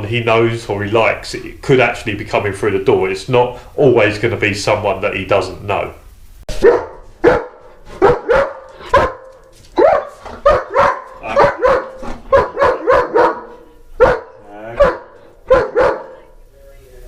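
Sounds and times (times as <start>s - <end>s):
dog barking: 6.5s - 16.4s.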